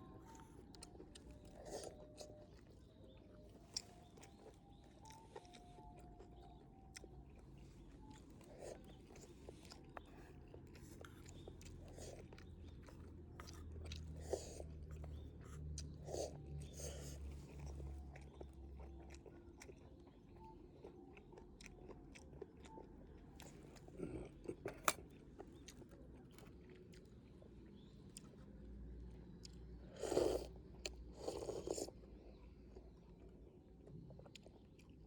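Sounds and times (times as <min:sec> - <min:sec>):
person chewing and crunching: 0:00.0 - 0:28.4, 0:29.4 - 0:35.0.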